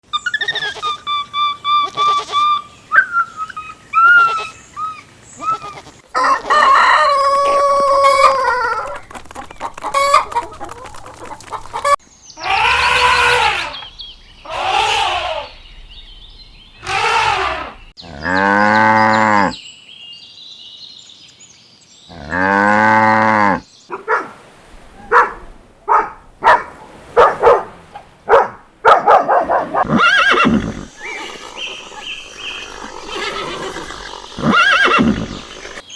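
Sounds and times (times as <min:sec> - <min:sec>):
chickens clucking: 0:04.1 - 0:15.5
rooster crowing: 0:06.1 - 0:08.9.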